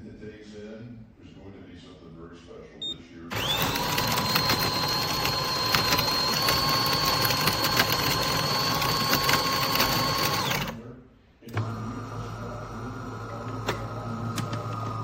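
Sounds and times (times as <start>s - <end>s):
small motorised machine whining: 3.3s - 10.9s, 11.5s - 15.0s.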